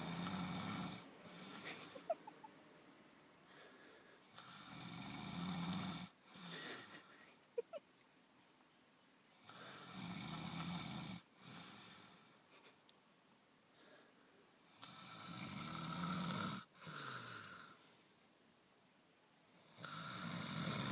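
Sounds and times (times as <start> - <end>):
person snoring: 0.0 - 2.2, 4.3 - 7.0, 14.7 - 17.8, 19.7 - 20.9
breathing out: 3.4 - 4.3.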